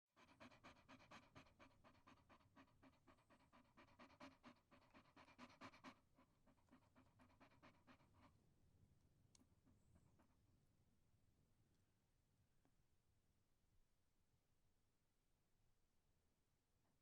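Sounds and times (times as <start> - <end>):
rapid rhythmic panting: 0.1 - 8.4.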